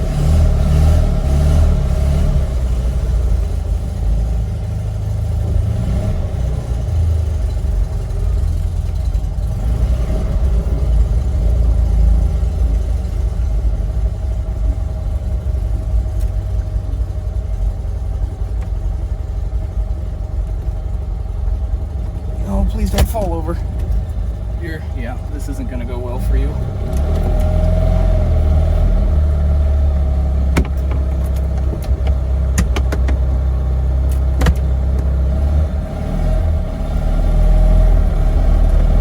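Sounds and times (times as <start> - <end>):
small car engine revving: 0.0 - 3.8, 22.4 - 39.0.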